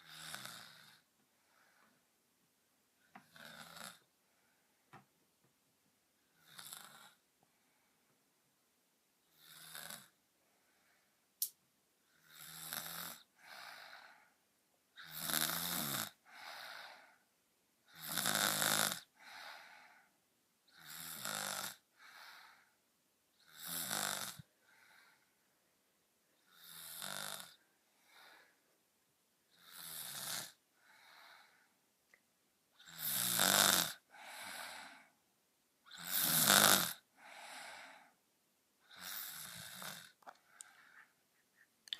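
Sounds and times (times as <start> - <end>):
girl snoring: 0.0 - 1.1, 3.2 - 4.1, 6.4 - 7.2, 9.3 - 10.2, 12.1 - 14.2, 15.0 - 17.0, 17.9 - 19.8, 20.7 - 22.7, 23.4 - 25.2, 26.4 - 28.5, 29.5 - 31.6, 32.8 - 35.1, 35.9 - 38.0, 38.8 - 40.2.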